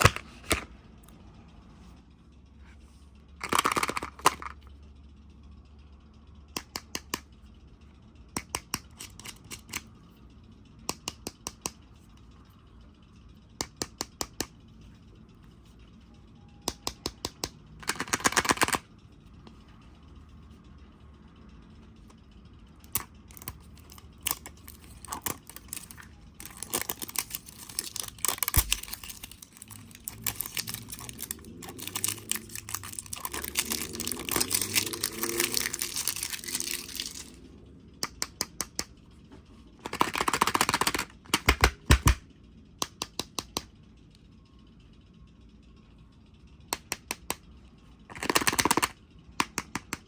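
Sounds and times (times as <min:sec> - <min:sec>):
plastic and paper crinkling: 0:23.9 - 0:37.3.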